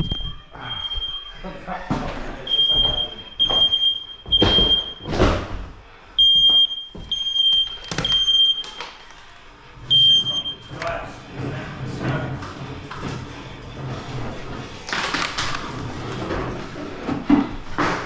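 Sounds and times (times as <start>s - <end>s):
smoke alarm beeping: 0.0s - 1.5s, 2.5s - 5.1s, 6.2s - 8.8s, 9.9s - 10.8s.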